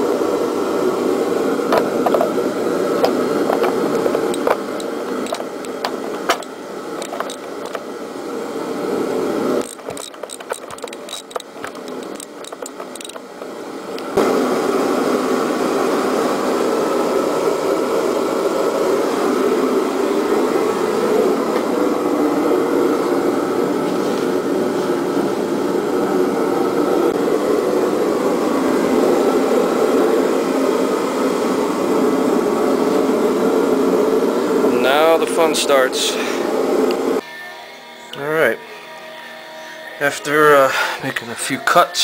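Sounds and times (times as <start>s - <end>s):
steady mechanical noise: 0.0s - 42.0s
light clicks and knocks: 3.0s - 7.8s, 9.6s - 13.5s.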